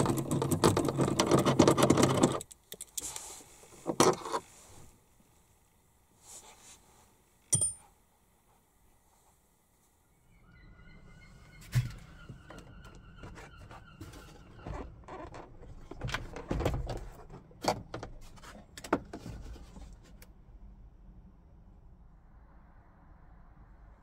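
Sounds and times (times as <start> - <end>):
faint high whine: 20.7 - 24.0.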